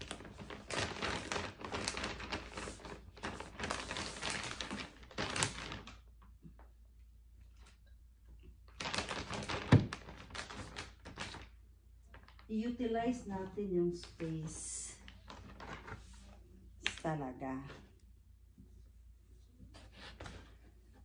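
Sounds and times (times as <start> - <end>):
plastic bag crinkling: 0.0 - 6.3, 8.7 - 17.0.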